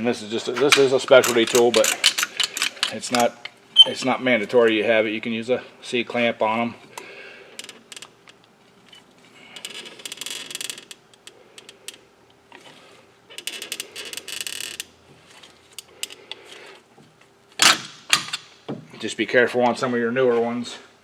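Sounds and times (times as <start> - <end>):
compressor tool ratcheting: 0.5 - 3.9, 17.6 - 18.5.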